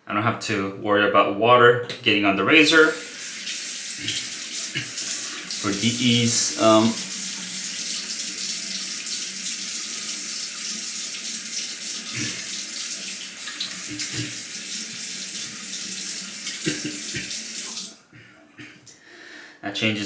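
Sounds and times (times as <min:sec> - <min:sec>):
razor being rinsed: 0:02.5 - 0:18.0
tap running into a sink: 0:06.7 - 0:17.9.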